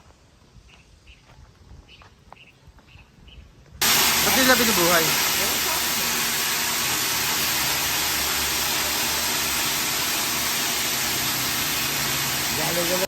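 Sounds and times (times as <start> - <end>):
steady rushing hiss: 3.8 - 13.0.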